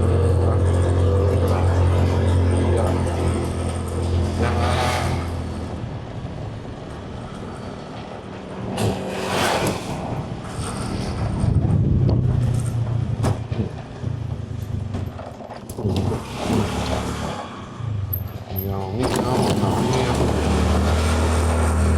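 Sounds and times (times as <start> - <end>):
passing vehicle rush: 0.0 - 21.9
vehicle engine and road noise: 0.0 - 21.9.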